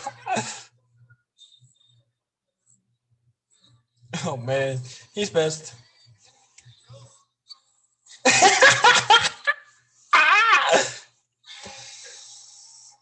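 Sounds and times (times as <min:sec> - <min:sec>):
person laughing: 0:08.3 - 0:09.6, 0:10.2 - 0:10.9.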